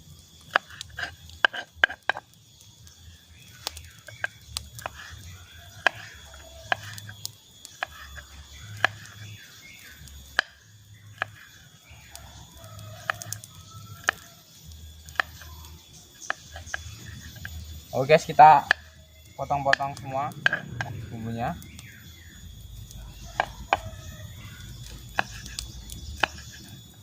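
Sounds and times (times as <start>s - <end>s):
knife chopping on a board: 25.1s - 25.6s, 26.2s - 26.6s.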